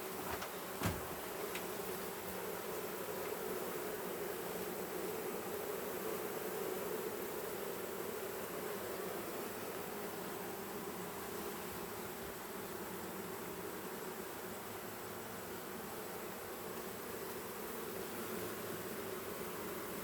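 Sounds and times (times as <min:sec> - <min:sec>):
honeybees buzzing: 0:00.0 - 0:20.0.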